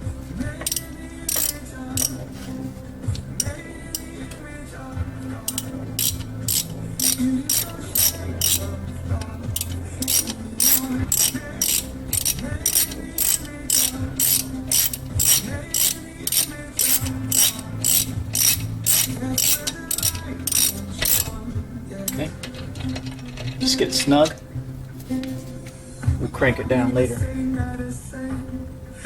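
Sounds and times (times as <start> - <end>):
ratchet wrench clicking: 0.6 - 2.2, 5.4 - 8.8, 9.6 - 21.4.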